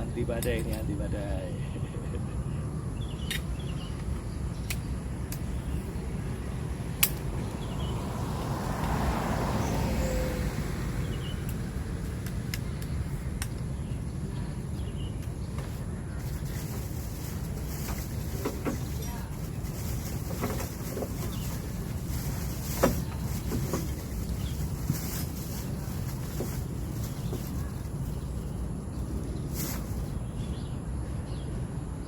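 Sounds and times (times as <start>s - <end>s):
vehicle passing by: 5.8s - 13.1s.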